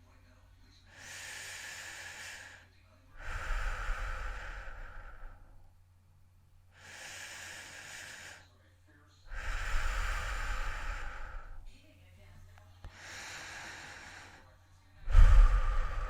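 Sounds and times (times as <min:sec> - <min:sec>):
person breathing heavily: 0:00.9 - 0:05.6, 0:06.7 - 0:08.5, 0:09.3 - 0:11.7, 0:12.9 - 0:16.0.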